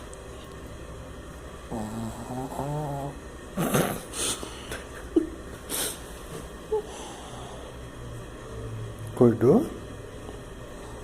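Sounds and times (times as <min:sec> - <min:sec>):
dog snoring: 0:01.7 - 0:04.0.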